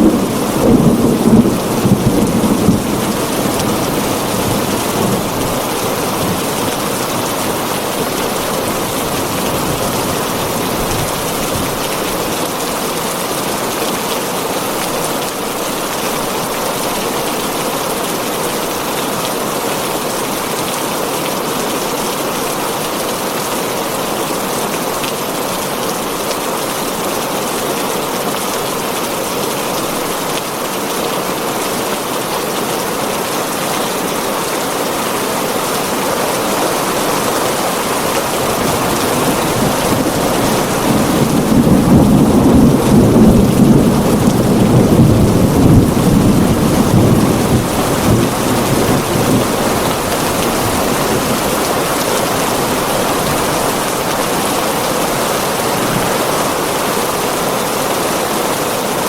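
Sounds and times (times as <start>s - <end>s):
low roll of thunder: 0.0s - 7.4s, 38.1s - 54.1s
heavy rain on a tin roof: 0.0s - 59.0s.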